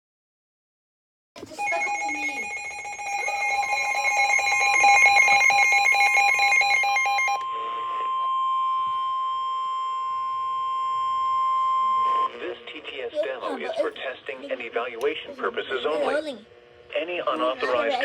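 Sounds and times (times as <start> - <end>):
pulsing two-tone alarm: 1.5 - 12.3
steady single tone: 1.5 - 12.3.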